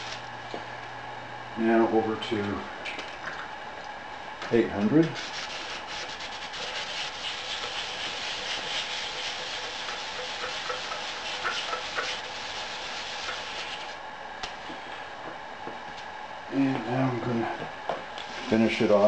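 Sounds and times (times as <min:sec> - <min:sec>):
wet sanding plastic: 0:05.2 - 0:14.0.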